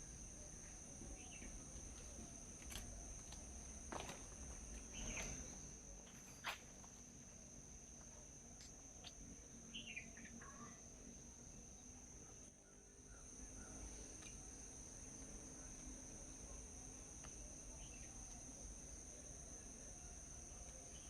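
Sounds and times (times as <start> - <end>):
soft bird chirps: 8.6 - 10.8.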